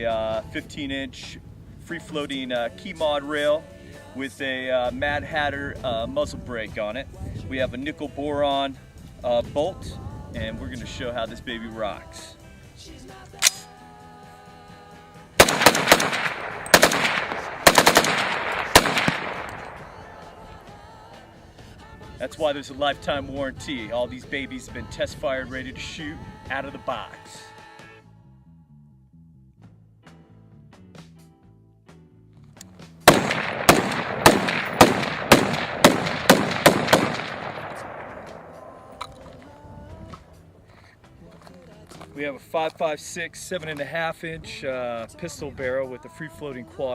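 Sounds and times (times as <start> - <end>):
background music: 0.0 - 46.9
gunshot echo: 15.4 - 20.7, 33.1 - 39.4
rifle shots: 15.4 - 20.7, 33.1 - 39.3.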